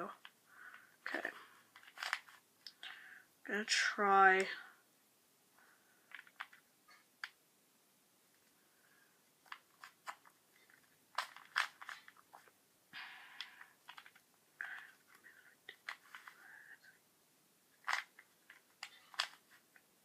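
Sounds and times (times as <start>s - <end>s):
rubik's cube clicks and rasps: 0.1s - 2.9s, 6.1s - 6.6s, 7.2s - 7.4s, 9.4s - 12.5s, 13.3s - 16.9s, 17.8s - 19.8s.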